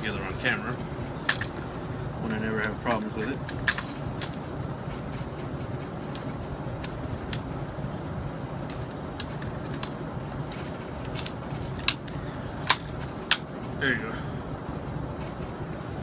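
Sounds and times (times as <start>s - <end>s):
steady background hum: 0.0s - 16.0s
metal parts clicking: 1.2s - 1.6s, 2.6s - 4.4s, 8.7s - 9.9s, 10.5s - 13.5s.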